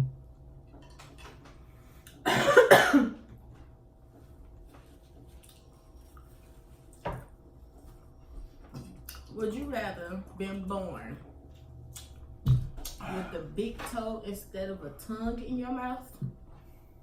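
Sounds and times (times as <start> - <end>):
person coughing: 2.2 - 3.3.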